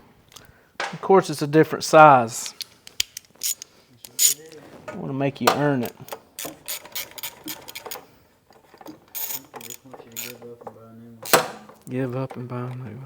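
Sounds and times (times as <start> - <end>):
ratchet wrench clicking: 2.4 - 4.6, 5.8 - 8.0, 9.1 - 10.4, 11.2 - 11.9.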